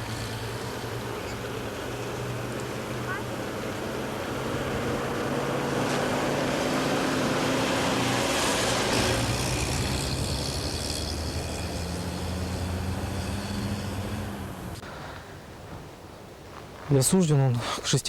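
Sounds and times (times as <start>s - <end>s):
car engine running: 8.6s - 14.8s.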